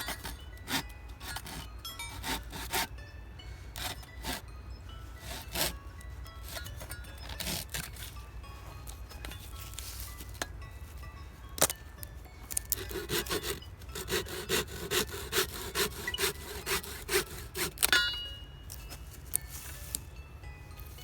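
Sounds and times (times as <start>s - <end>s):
hand saw cutting wood: 0.0s - 3.0s, 3.7s - 4.5s, 5.2s - 5.8s, 6.4s - 8.1s, 12.7s - 18.0s.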